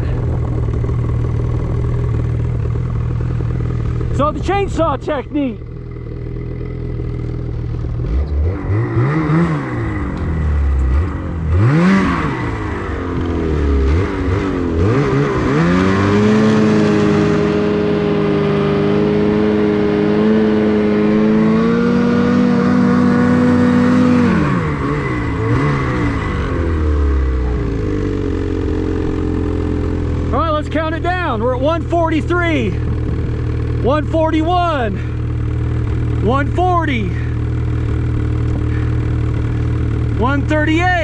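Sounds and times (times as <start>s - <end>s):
snowmobile engine revving: 0.0s - 41.0s.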